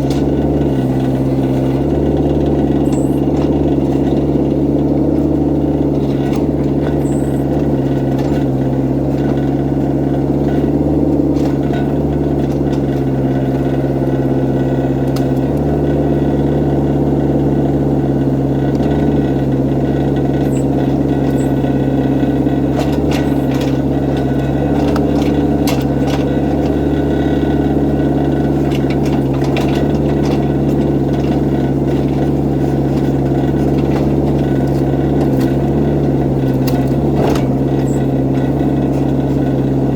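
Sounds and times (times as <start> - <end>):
excavator diesel engine running: 0.0 - 39.9
sharp clicks and knocks: 22.7 - 39.9.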